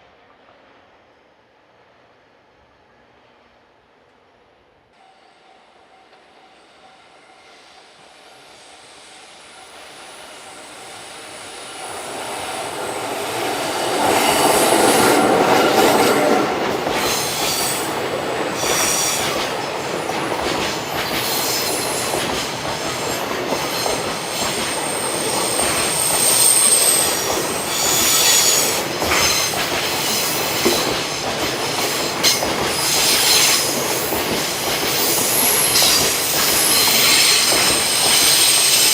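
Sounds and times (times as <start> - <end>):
freight train rolling past: 0.0 - 38.9
high-pitched wheel squeal: 35.0 - 38.9.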